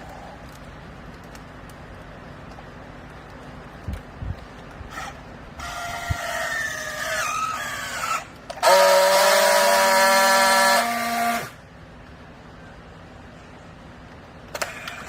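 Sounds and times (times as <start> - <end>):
baler high whine: 4.8 - 15.0
loud multi-tone squeal: 4.9 - 11.6.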